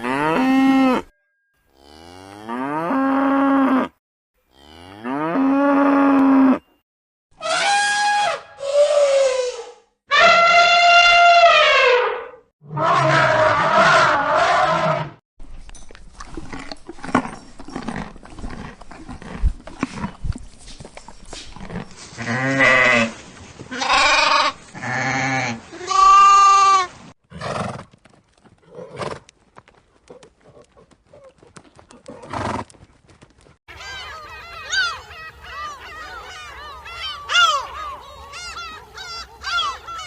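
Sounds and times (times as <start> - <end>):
farm animal bleating: 22.2 - 26.9.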